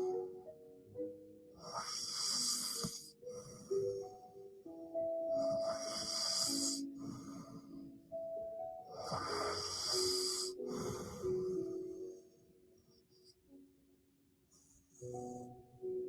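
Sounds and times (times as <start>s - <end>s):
soft background music: 0.0s - 16.0s
woman snoring: 5.6s - 7.4s, 9.0s - 11.3s.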